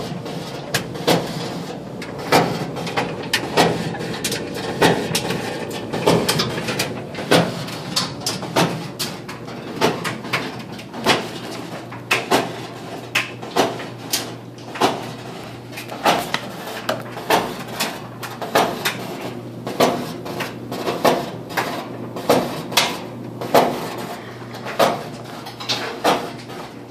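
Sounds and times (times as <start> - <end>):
clothes dryer hum: 0.0 - 26.9
dryer drum knocking: 0.0 - 26.9.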